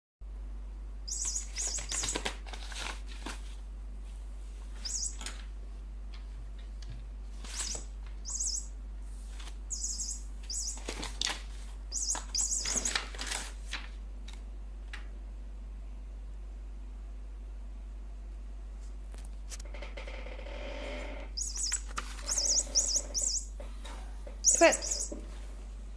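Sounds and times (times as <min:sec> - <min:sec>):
steady low hum: 0:00.2 - 0:25.9
cat toy chirping: 0:01.1 - 0:02.3, 0:04.8 - 0:05.3, 0:07.5 - 0:08.8, 0:09.7 - 0:11.2, 0:11.9 - 0:13.0, 0:21.4 - 0:23.6, 0:24.4 - 0:25.2.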